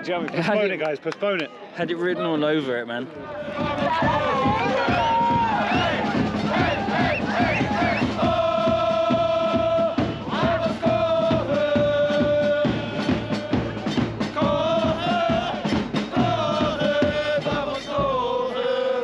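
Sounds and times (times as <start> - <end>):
crowd chanting: 3.1 - 19.0
steady drumbeat: 3.4 - 18.5.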